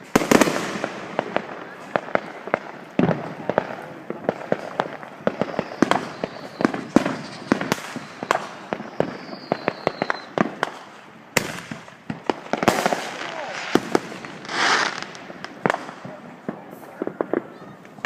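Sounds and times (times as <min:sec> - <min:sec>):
fireworks bangs and pops: 0:00.0 - 0:18.0
faint falling whistle: 0:07.9 - 0:10.4.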